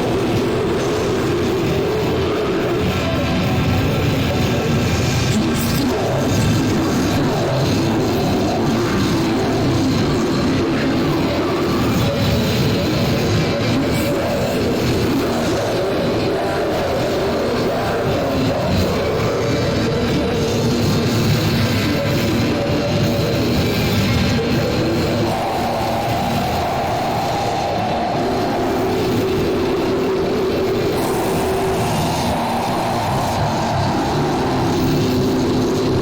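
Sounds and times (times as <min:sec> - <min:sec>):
distorted extreme metal music: 0:00.0 - 0:36.0.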